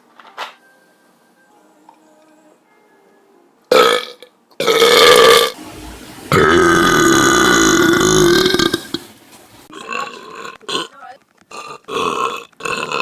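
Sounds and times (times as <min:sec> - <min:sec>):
person belching loudly: 0:03.7 - 0:05.6, 0:09.7 - 0:13.0.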